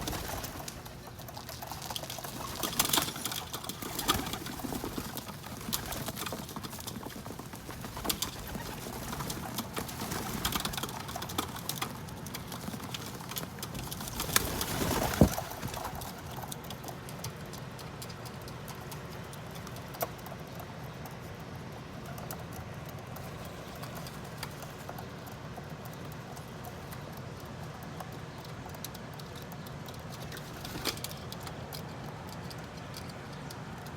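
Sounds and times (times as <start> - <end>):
pigeons cooing: 0.0 - 16.8
pigeons pecking seeds: 0.0 - 33.9.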